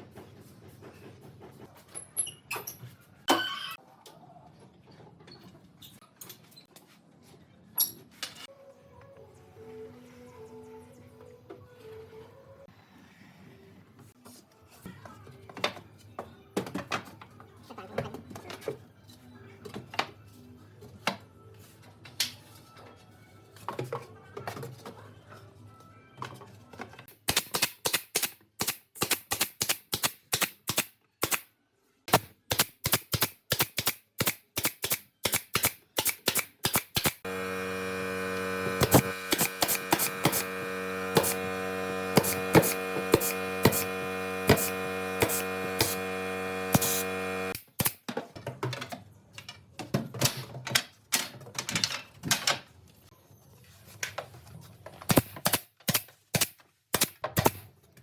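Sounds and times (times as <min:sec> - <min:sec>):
motor hum: 0:37.1 - 0:47.6.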